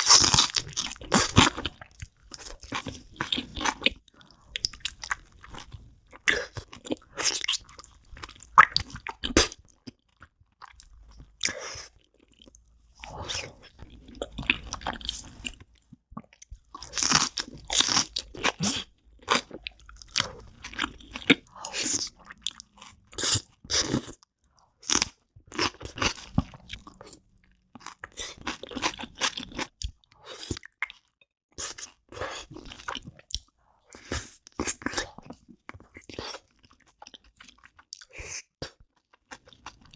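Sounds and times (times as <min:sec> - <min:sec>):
person biting and chewing: 0:00.0 - 0:03.9, 0:16.8 - 0:24.2.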